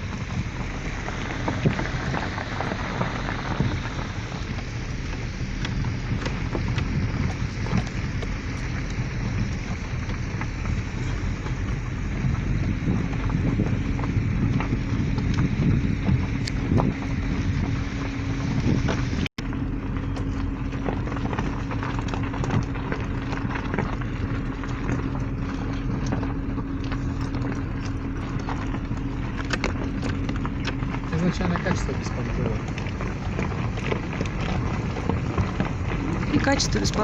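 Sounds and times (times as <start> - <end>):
rattles and knocks: 0.0 - 37.0
road rumble: 0.0 - 37.0
vehicle engine drone: 0.0 - 37.0.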